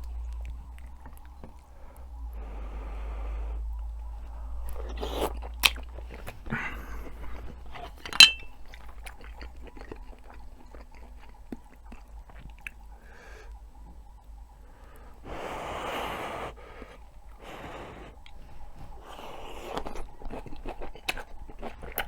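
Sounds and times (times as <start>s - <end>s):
chewing food: 0.0s - 2.9s, 3.6s - 15.2s, 15.8s - 22.0s
sharp clink: 8.1s - 8.6s.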